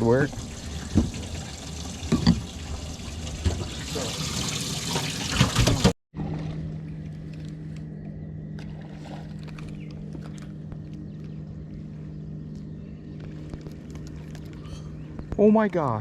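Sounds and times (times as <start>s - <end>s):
water pouring and splashing: 0.0s - 6.4s
steady low hum: 6.2s - 16.0s.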